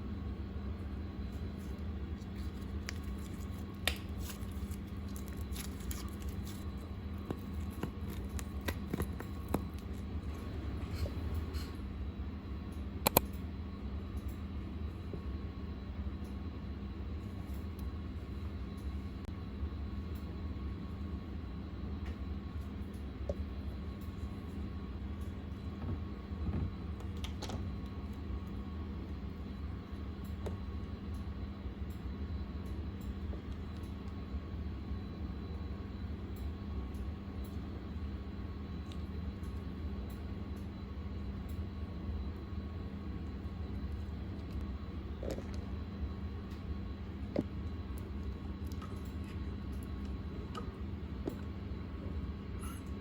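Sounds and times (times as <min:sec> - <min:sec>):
low background hum: 0:00.0 - 0:53.0
hands squishing slime: 0:01.6 - 0:11.1.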